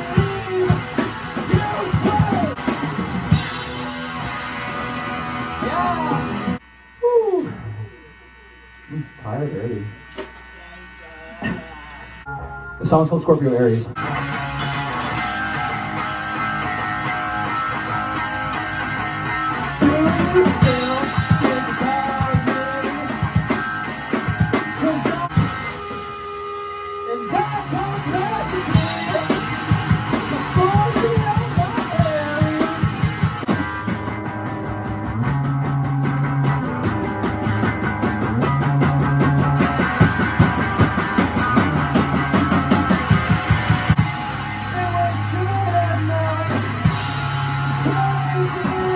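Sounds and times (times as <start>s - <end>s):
person singing: 0.0s - 2.6s, 5.6s - 6.5s, 19.8s - 23.3s, 24.8s - 25.6s, 27.1s - 33.3s, 44.4s - 48.9s
rock band playing: 0.0s - 6.6s, 12.3s - 48.9s.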